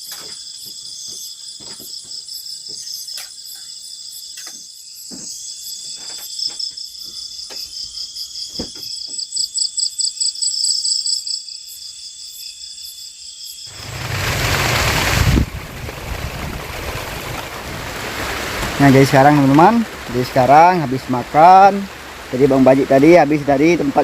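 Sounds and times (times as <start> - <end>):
crickets and insects trilling: 0.0 - 24.0
fast pulsing insect trill: 9.3 - 17.6.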